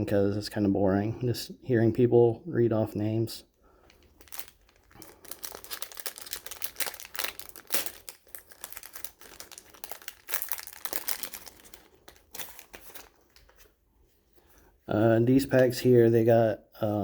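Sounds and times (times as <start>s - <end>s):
wrappers tearing and crinkling: 3.8s - 13.8s.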